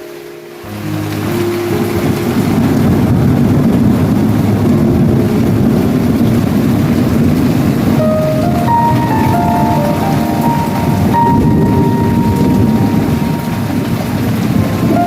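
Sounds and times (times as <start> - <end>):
heavy rain hissing: 0.0 - 15.0
rolling thunder: 1.1 - 15.0.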